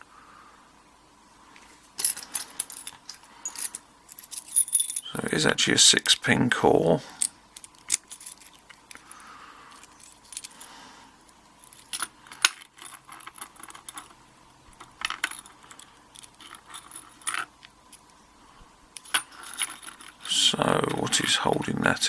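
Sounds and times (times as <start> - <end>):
padlock parts clicking: 7.2 - 10.6.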